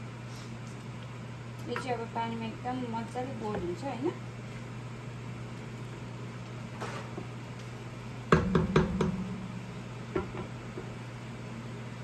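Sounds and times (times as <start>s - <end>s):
pasta boiling: 0.0s - 12.0s
utensil knocking against pot: 8.3s - 9.4s.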